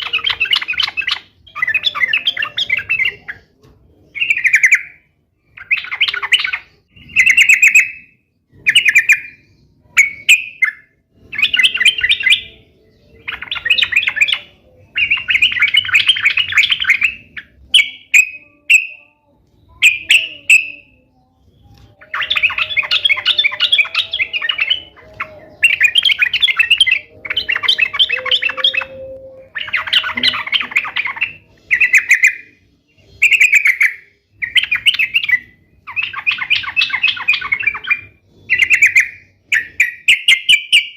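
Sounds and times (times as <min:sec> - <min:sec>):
bulbul singing: 0:00.0 - 0:40.9.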